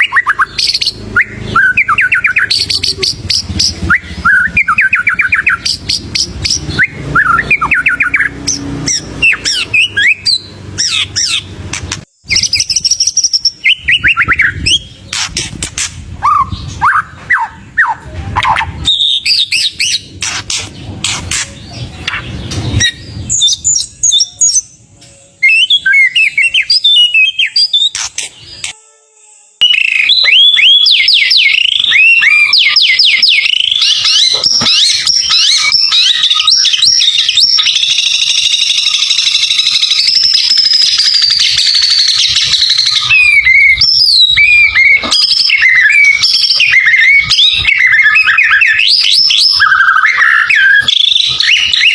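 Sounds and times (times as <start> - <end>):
bird singing whistled phrases: 0.0 - 11.4, 12.2 - 15.5, 25.4 - 28.8, 29.6 - 51.9.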